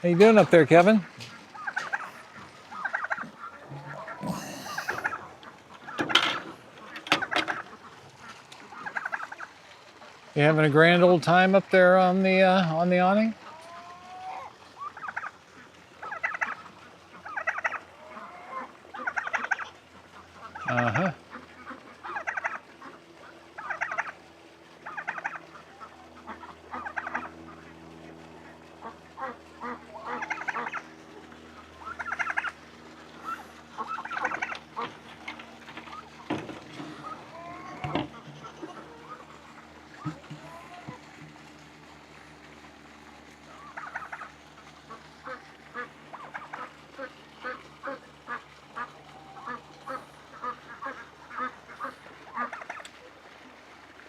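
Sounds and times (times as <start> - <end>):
ducks quacking: 0.0 - 9.6, 13.0 - 41.3, 43.4 - 53.0
poultry calling in warbling bursts: 1.5 - 8.0, 8.7 - 9.5, 16.0 - 19.7, 20.4 - 22.7, 24.8 - 27.8, 28.8 - 30.9, 31.5 - 32.6, 33.2 - 35.1, 35.8 - 41.0, 43.5 - 44.3, 44.9 - 52.9.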